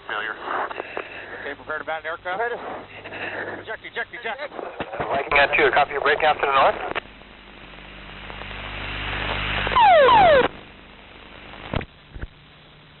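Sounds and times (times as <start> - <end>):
loud blast with falling whistles: 9.8 - 10.5.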